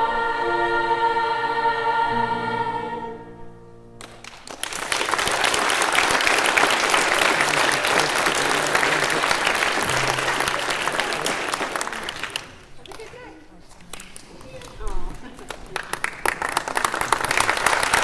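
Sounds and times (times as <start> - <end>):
children's choir singing: 0.0 - 3.5
audience applause: 4.0 - 18.0.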